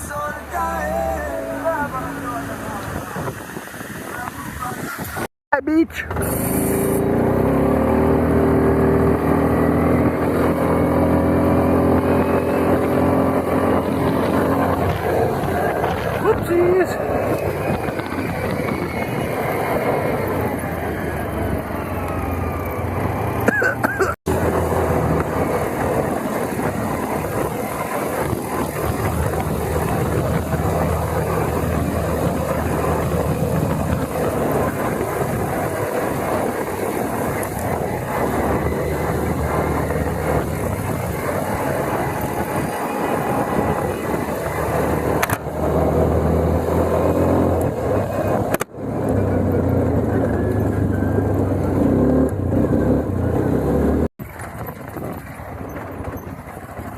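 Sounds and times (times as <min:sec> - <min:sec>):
wind rushing: 0:00.0 - 0:05.3, 0:06.3 - 0:23.3, 0:24.3 - 0:48.5
atv engine running: 0:05.9 - 0:56.9.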